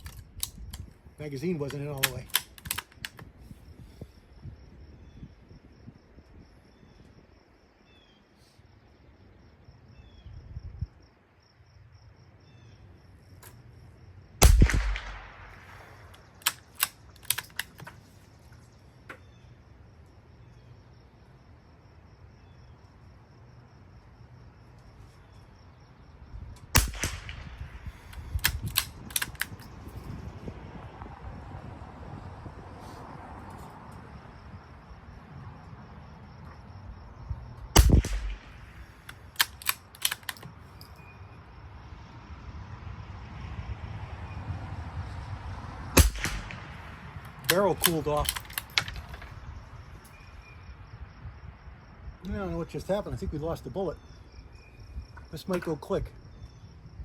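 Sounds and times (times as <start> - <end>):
sharp cracks and clicks: 1.6 - 3.3, 14.4 - 18.0, 26.6 - 29.7, 37.8 - 40.6, 46.0 - 49.4
rifle shots: 14.4 - 17.8, 26.7 - 29.6, 37.8 - 40.4, 46.0 - 49.3.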